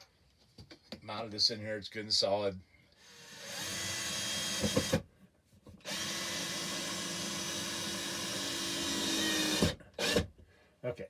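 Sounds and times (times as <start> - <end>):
power drill running: 3.0 - 5.0, 5.8 - 10.3.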